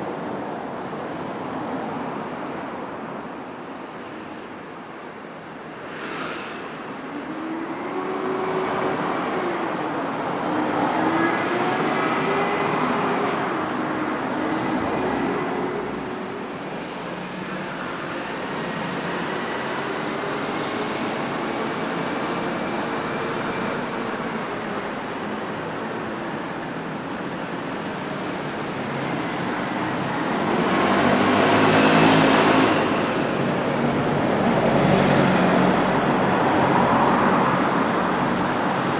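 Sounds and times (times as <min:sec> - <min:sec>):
road noise: 0:00.0 - 0:38.9
short hiss: 0:05.8 - 0:07.3.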